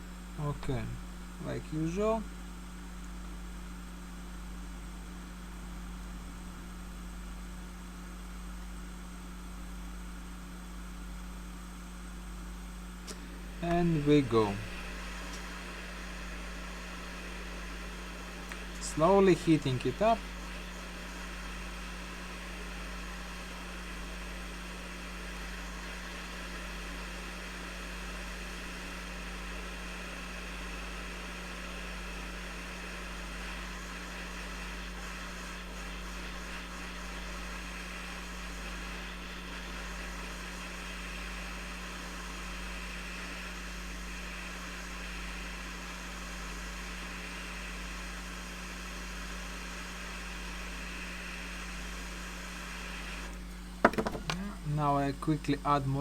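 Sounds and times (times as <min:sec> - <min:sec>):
hot air station blowing: 0:00.0 - 0:02.7, 0:13.0 - 0:56.0
low steady hum: 0:00.0 - 0:56.0.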